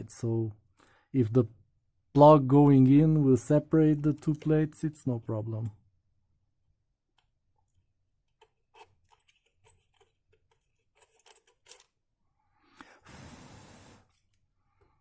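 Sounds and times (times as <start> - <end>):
small metal parts clicking: 8.3 - 12.0
hiss: 13.0 - 14.1.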